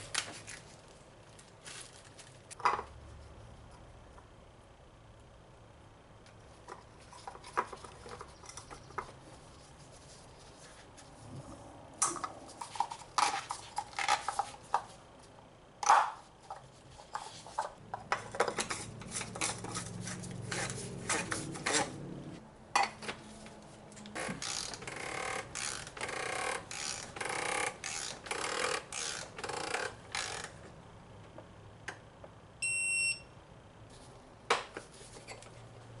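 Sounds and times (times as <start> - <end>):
short electronic beep: 32.6 - 33.3.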